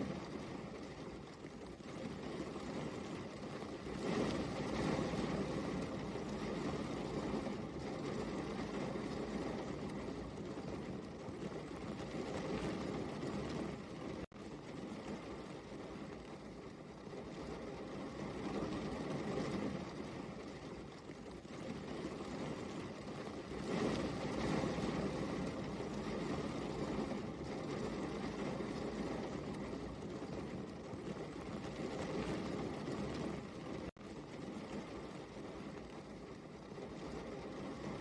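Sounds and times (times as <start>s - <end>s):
steady rain: 0.0s - 38.0s.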